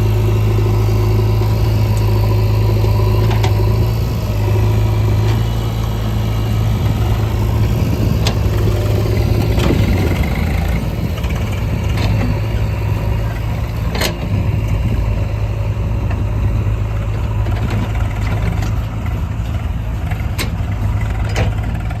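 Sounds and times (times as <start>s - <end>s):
diesel engine running: 0.0s - 22.0s.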